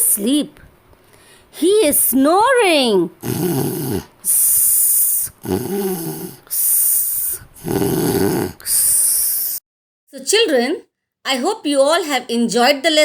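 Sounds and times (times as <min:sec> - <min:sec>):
person snoring: 0:03.2 - 0:09.6
hissing out-breath: 0:03.6 - 0:09.6.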